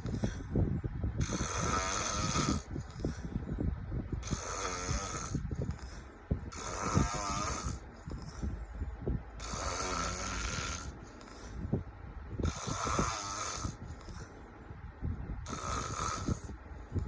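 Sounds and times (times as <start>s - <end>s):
person snoring: 1.2s - 3.2s, 4.2s - 8.4s, 9.4s - 11.6s, 12.4s - 14.3s, 15.4s - 16.6s.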